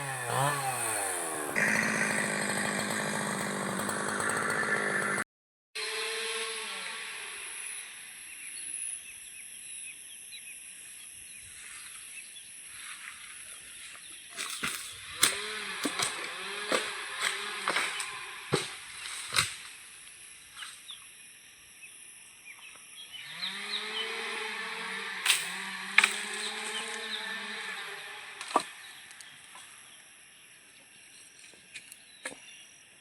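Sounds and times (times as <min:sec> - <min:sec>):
chainsaw revving: 0:00.0 - 0:05.2, 0:05.8 - 0:08.1, 0:14.5 - 0:19.8, 0:23.1 - 0:29.3
sharp cracks and knocks: 0:14.4 - 0:19.8, 0:25.3 - 0:27.0.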